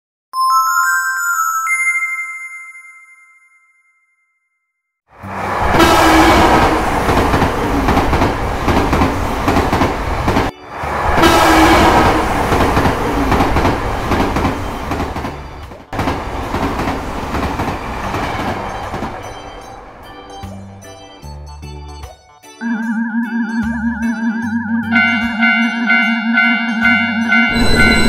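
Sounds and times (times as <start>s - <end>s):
train running: 5.2s - 21.5s, 24.9s - 28.0s.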